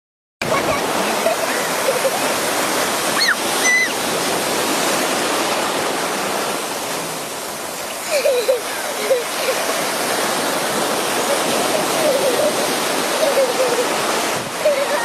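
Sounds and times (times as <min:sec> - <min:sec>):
ocean surf: 0:00.4 - 0:15.0
short high cries: 0:03.2 - 0:04.0
faint voices: 0:11.2 - 0:15.0.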